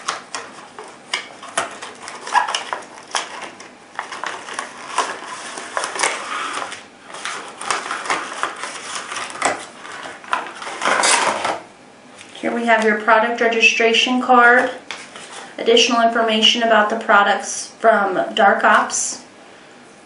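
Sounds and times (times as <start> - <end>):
packaging crinkling and rustling: 0.0 - 12.3.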